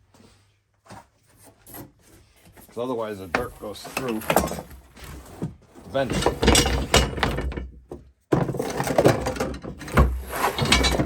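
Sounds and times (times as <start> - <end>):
knocks thuds and scraping: 3.2 - 11.0.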